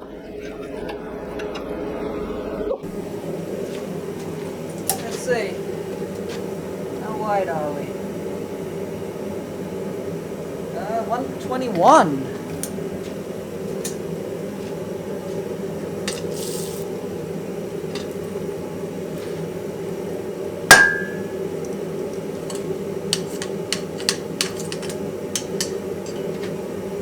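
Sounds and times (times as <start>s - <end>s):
steady mechanical drone: 0.0s - 27.0s
sharp metallic clang: 20.7s - 21.4s.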